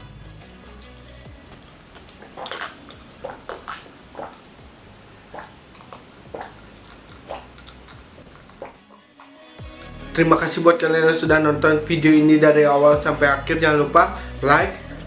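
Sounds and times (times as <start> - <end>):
wet chewing and lip smacks: 1.6 - 4.6, 5.3 - 9.9.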